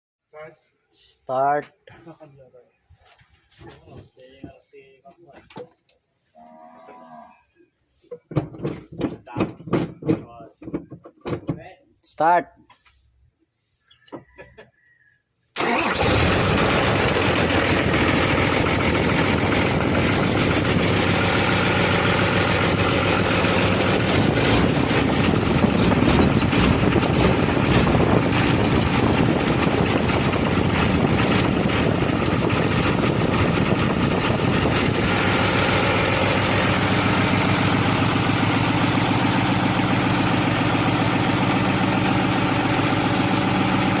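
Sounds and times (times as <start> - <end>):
diesel engine cranking: 15.6 - 44.0.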